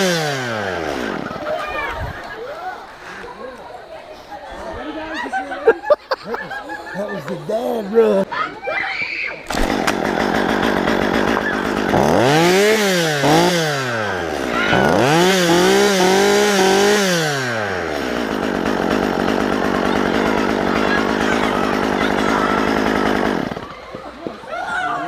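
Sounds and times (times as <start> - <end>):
chainsaw idling and revving: 0.0 - 2.5, 9.5 - 24.2.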